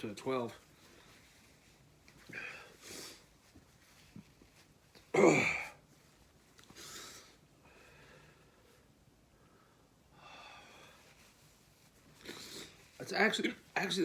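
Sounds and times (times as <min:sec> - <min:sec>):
man hiccuping: 0:05.2 - 0:05.8.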